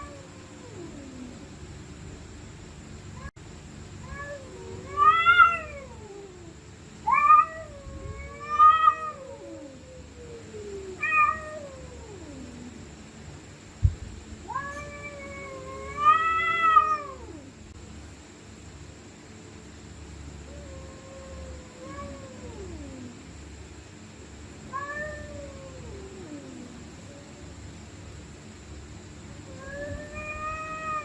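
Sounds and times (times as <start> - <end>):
cats yowling: 0.0 - 1.4, 4.0 - 12.8, 14.5 - 17.6, 20.4 - 23.3, 24.7 - 27.6, 29.4 - 31.0
short thud: 13.8 - 14.2.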